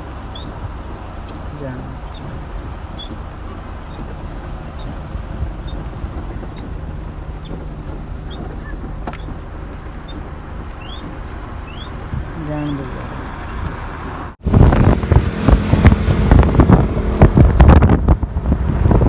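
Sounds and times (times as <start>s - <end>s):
high bird chirps: 10.8s - 12.0s.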